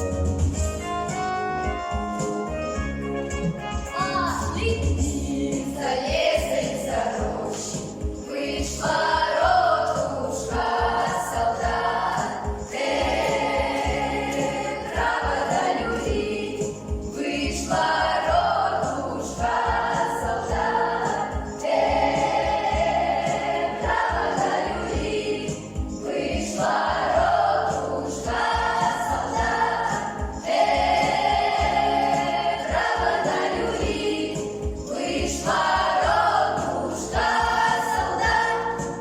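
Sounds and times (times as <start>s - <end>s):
children singing in chorus: 8.3s - 39.0s.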